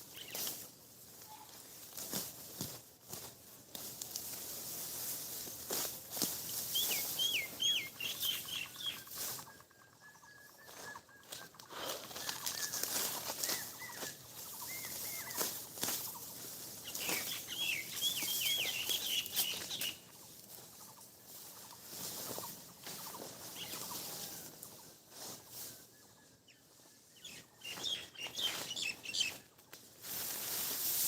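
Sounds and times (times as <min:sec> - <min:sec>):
dry rustling and crackling: 0:00.1 - 0:09.6, 0:11.2 - 0:25.8, 0:29.5 - 0:31.0
bird slurred calls: 0:06.8 - 0:20.1
songbird whistling phrase: 0:17.0 - 0:20.0.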